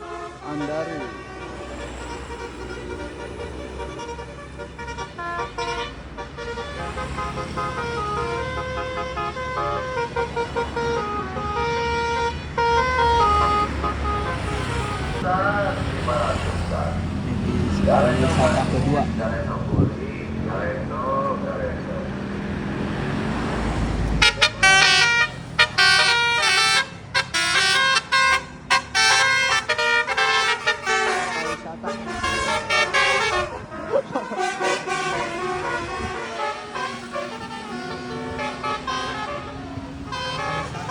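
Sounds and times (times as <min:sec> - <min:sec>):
bus melody horn: 0:00.0 - 0:16.8, 0:23.6 - 0:40.9
engine and road rumble: 0:00.0 - 0:40.9.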